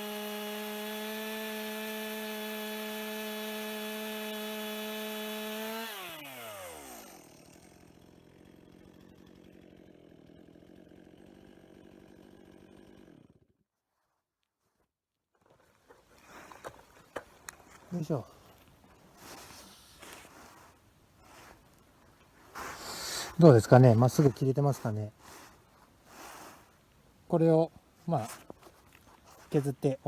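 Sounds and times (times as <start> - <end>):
chainsaw cutting log: 0.0 - 13.6.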